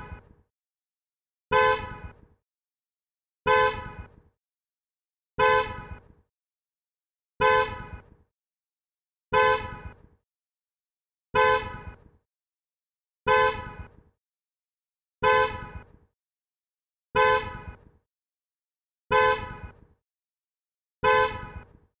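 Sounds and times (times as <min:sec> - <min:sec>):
car horn honks: 0:01.5 - 0:02.1, 0:03.5 - 0:04.1, 0:05.4 - 0:06.0, 0:07.4 - 0:08.1, 0:09.3 - 0:10.0, 0:11.4 - 0:12.0, 0:13.3 - 0:13.9, 0:15.2 - 0:15.8, 0:17.2 - 0:17.8, 0:19.1 - 0:19.8, 0:21.0 - 0:21.7.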